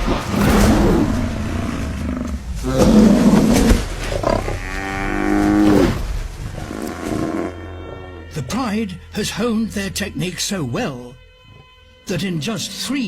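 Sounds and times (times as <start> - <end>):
lions growling and snarling: 0.0 - 8.2.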